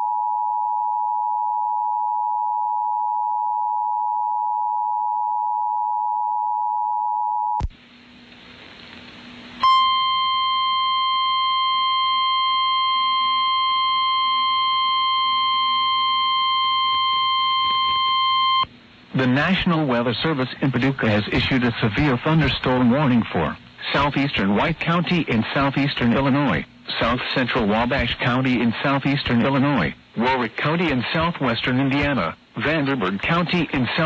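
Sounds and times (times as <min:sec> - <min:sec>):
steady single-pitch alarm tone: 0:00.0 - 0:07.6, 0:09.6 - 0:18.7
faint radio hiss: 0:07.6 - 0:09.8, 0:18.6 - 0:34.0
two-tone attention signal: 0:09.6 - 0:18.6.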